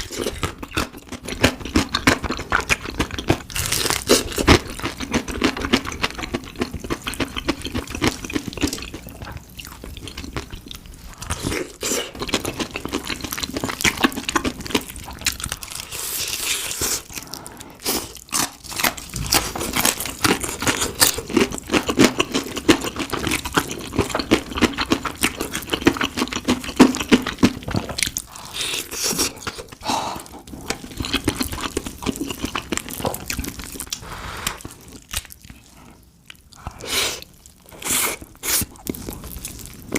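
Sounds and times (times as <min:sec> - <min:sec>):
crunching and chewing fried chicken: 0:00.0 - 0:39.9.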